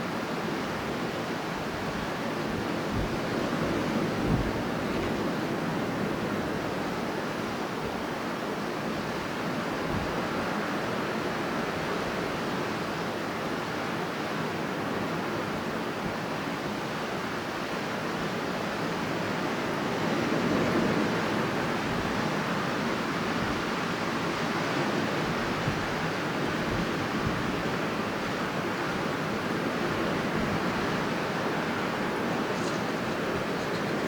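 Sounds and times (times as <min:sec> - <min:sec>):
strong wind blowing: 0:19.7 - 0:34.0.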